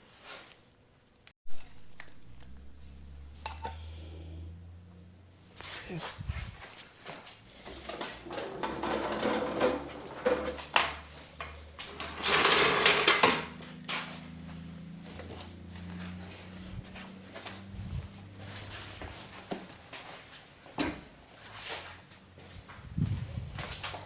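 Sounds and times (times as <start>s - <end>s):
steady low hum: 1.5s - 6.6s
wheel clanks and scraping: 7.5s - 14.4s.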